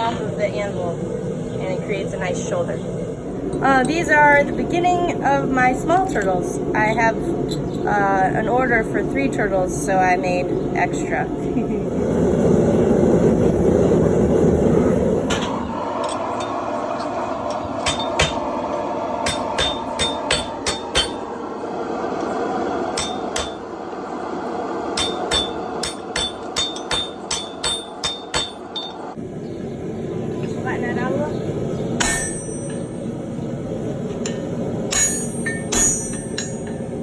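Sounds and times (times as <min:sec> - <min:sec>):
steady rushing noise: 0:00.0 - 0:37.0
hammer ringing on steel: 0:19.3 - 0:21.2, 0:25.0 - 0:29.0, 0:32.0 - 0:33.0, 0:34.9 - 0:36.9.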